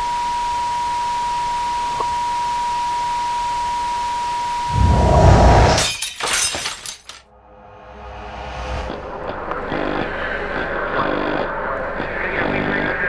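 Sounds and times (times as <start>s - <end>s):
low rumble: 4.7s - 5.8s
glass breaking: 5.7s - 7.2s.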